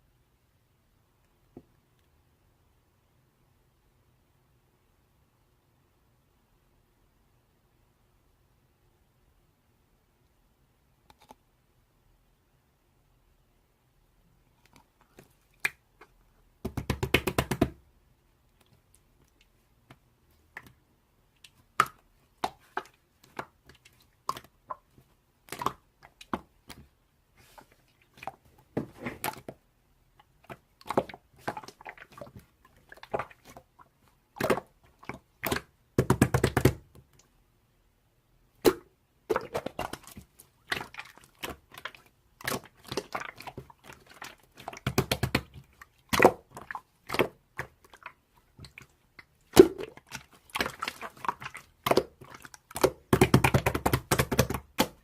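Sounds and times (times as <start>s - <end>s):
slime squeezed wet popping: 38.6s - 48.9s, 49.5s - 55.0s.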